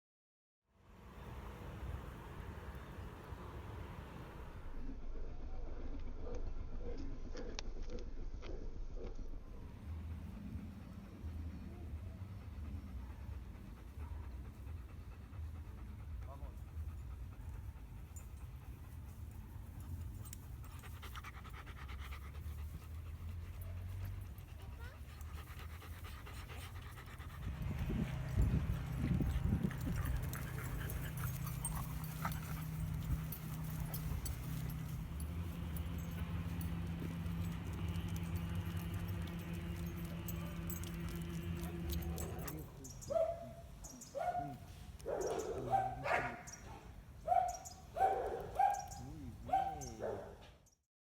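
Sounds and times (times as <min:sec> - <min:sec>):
dog panting: 0:10.6 - 0:42.7
dog barking: 0:43.1 - 0:50.4.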